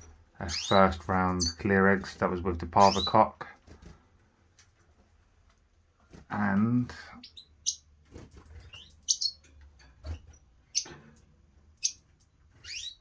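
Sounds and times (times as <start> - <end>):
birds chirping: 0.0 - 3.6, 6.2 - 13.0.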